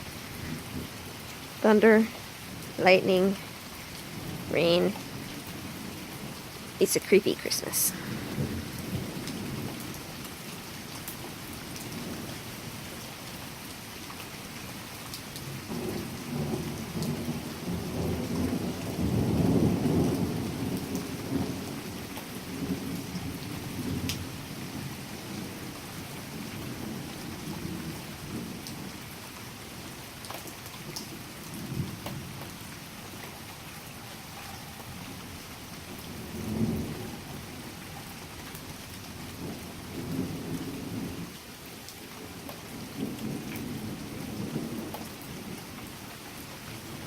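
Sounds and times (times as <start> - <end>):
steady rain: 0.0 - 47.0
thunder rumbling: 4.1 - 10.1, 15.7 - 25.6.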